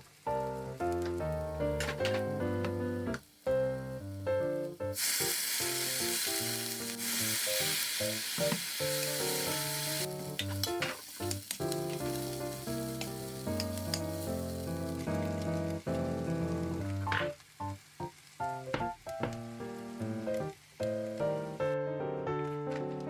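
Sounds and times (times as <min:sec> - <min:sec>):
food sizzling in frying pan: 0:00.1 - 0:21.6
background music: 0:00.3 - 0:17.8.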